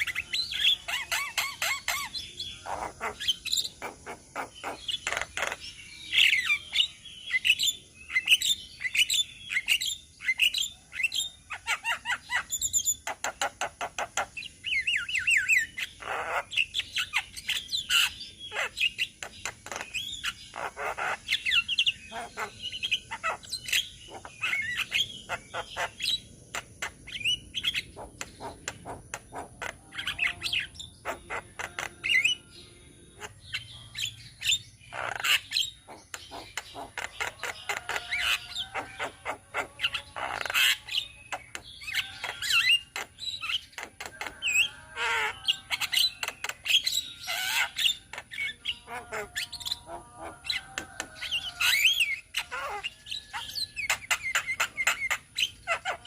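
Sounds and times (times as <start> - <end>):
mynas chattering: 27.8 - 56.0.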